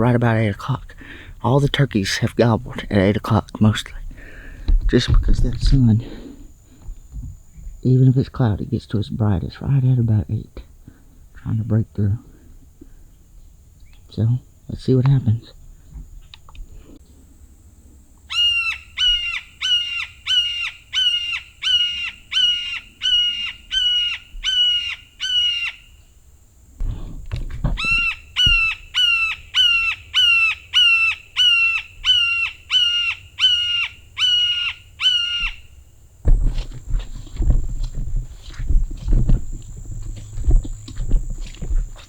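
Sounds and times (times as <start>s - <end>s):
crow call caws: 18.3s - 25.8s, 27.8s - 35.6s.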